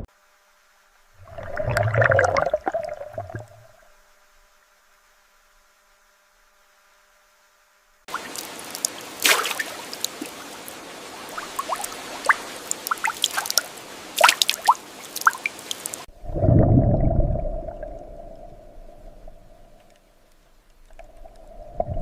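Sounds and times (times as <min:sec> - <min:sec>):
water splashing and dripping: 0:08.1 - 0:16.1
low muffled rumble: 0:16.1 - 0:22.0.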